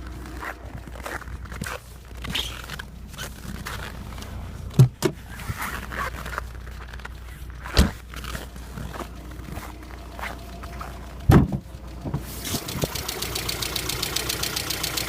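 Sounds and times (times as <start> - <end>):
car engine idling: 0.0 - 15.0
engine lifter tapping: 6.2 - 15.0
loud engine knocks: 11.2 - 12.2.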